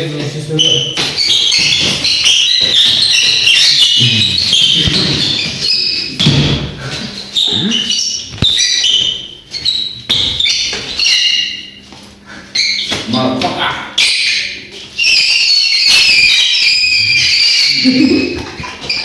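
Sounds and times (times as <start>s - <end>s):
high squeaks on floor: 0.5s - 13.4s, 14.0s - 19.0s
thuds: 4.8s - 6.9s.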